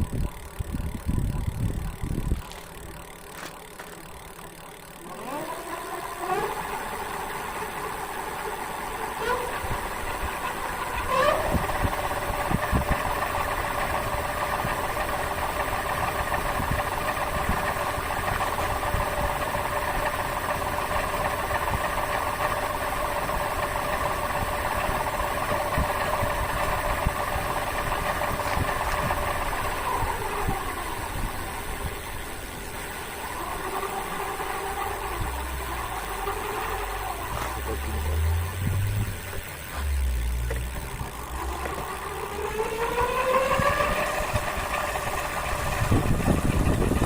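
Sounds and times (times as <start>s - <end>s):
electric motor whine: 0.0s - 47.0s
disc brake rubbing: 6.2s - 31.2s, 33.3s - 47.0s.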